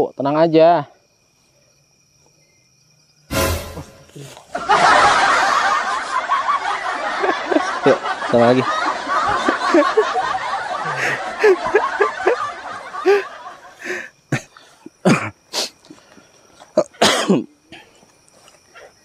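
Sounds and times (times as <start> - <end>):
man chuckling: 10.8 - 12.4, 13.0 - 14.5
man coughing harshly: 14.4 - 15.4, 16.8 - 18.0.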